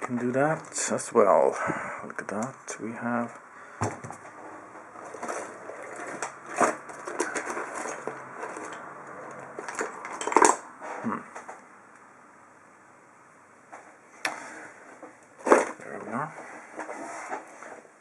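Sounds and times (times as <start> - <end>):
padlock clicking and scraping: 5.0 - 10.7.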